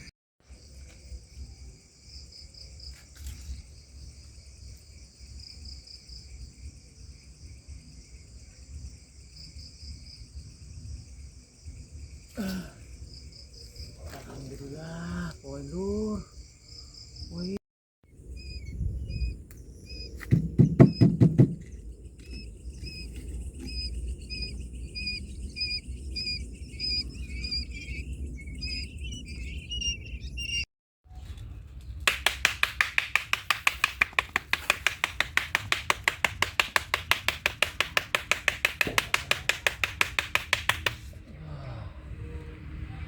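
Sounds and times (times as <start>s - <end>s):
bird chirping: 16.4s - 30.6s.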